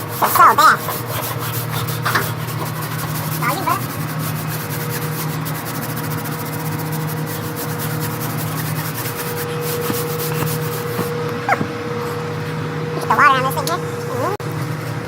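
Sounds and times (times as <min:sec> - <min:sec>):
scratchy rubbing noise: 0:00.0 - 0:11.2
hvac unit humming: 0:00.0 - 0:15.0.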